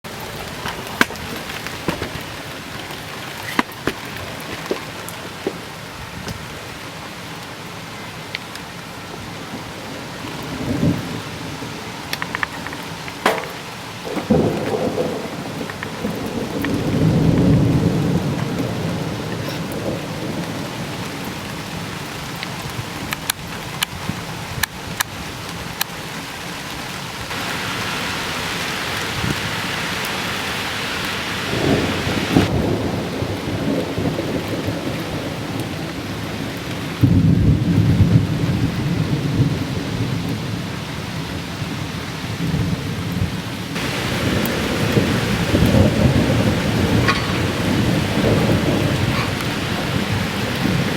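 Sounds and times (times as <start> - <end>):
steady rain: 0.0 - 50.9
thunder rumbling: 0.1 - 6.8, 9.2 - 23.1, 31.3 - 40.8, 42.4 - 50.9.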